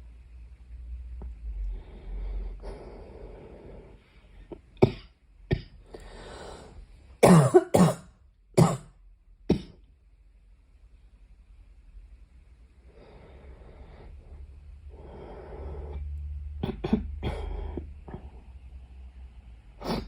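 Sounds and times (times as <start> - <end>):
soft breathing: 1.4 - 4.8, 5.8 - 7.2, 12.8 - 16.5, 17.1 - 20.0
girl coughing: 7.2 - 8.9, 16.6 - 17.4.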